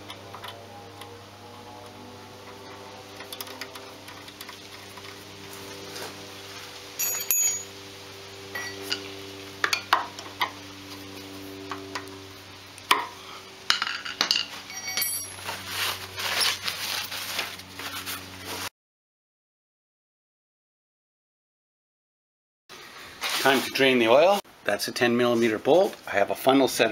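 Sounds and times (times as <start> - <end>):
steady low hum: 0.0 - 18.7
metal tools clinking: 7.0 - 7.7, 8.6 - 9.1, 13.7 - 15.6.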